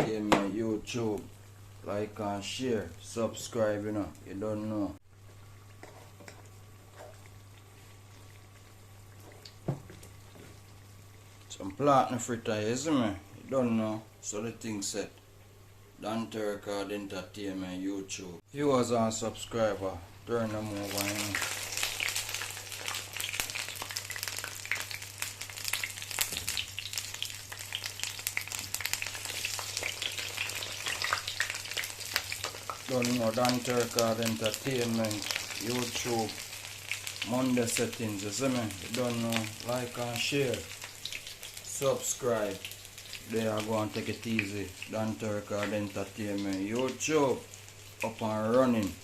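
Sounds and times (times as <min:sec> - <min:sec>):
low steady hum: 0:00.0 - 0:49.0
fritters sizzling in oil: 0:20.5 - 0:49.0.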